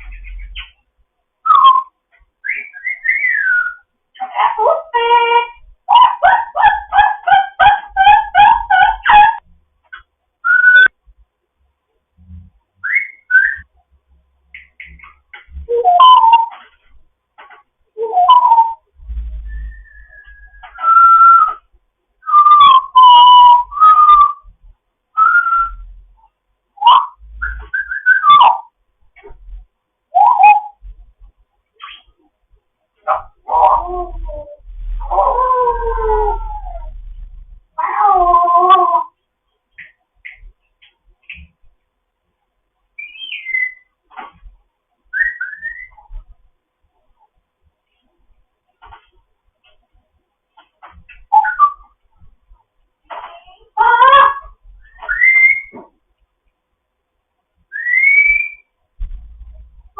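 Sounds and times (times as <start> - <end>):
parrot whistling: 1.4 - 3.8, 10.4 - 10.9, 12.8 - 13.7, 18.1 - 21.6, 22.2 - 24.5, 25.2 - 25.9, 26.8 - 28.7, 43.0 - 43.9, 45.1 - 46.0, 51.3 - 51.9, 54.8 - 55.7, 57.7 - 58.7
parrot calling: 1.5 - 9.4, 22.2 - 24.4, 26.8 - 28.7, 30.2 - 30.8, 33.1 - 37.2, 43.0 - 43.9, 51.2 - 52.0, 57.7 - 58.7.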